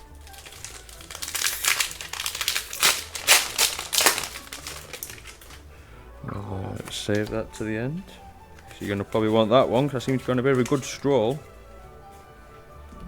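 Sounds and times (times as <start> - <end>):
foil wrappers crinkling: 0.0 - 5.8.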